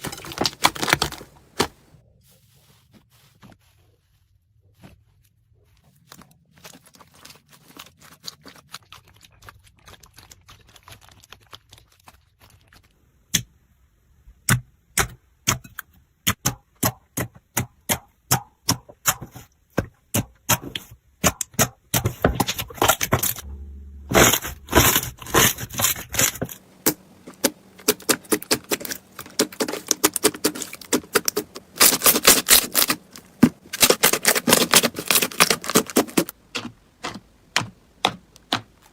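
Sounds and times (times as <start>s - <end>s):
slime clicking and crackling: 6.1s - 13.5s, 20.1s - 38.9s.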